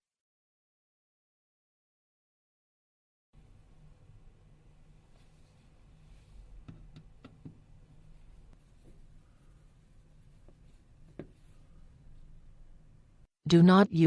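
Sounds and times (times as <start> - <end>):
low room hum: 3.4 - 13.3.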